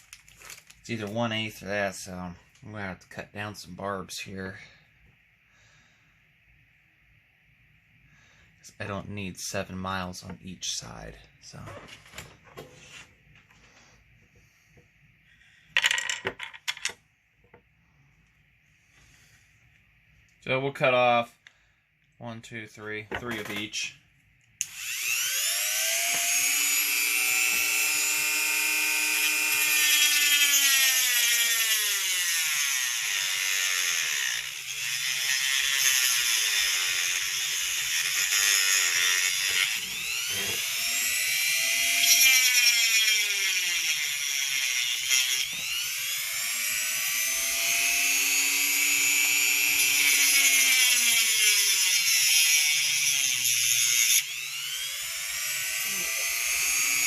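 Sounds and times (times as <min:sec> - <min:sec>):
rotary tool cutting plastic: 0:24.6 - 0:57.0.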